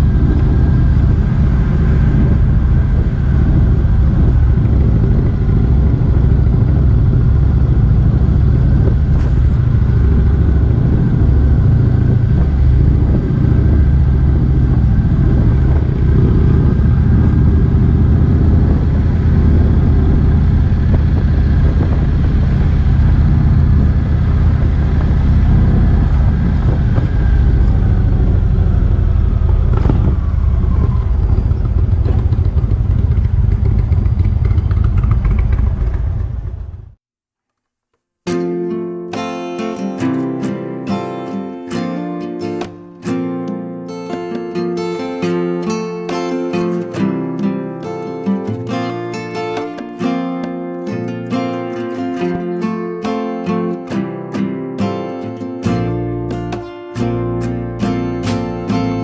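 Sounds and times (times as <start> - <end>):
motorcycle engine running: 0.0 - 37.0.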